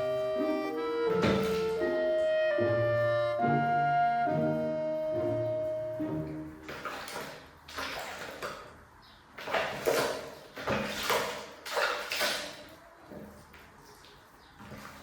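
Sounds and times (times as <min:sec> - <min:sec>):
water splashing and pouring: 0:01.1 - 0:02.0, 0:06.1 - 0:15.0.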